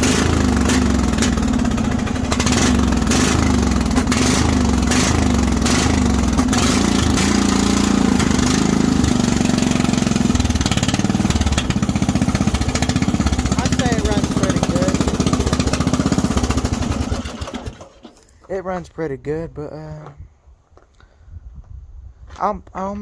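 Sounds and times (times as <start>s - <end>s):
lawn mower engine running: 0.0s - 18.3s.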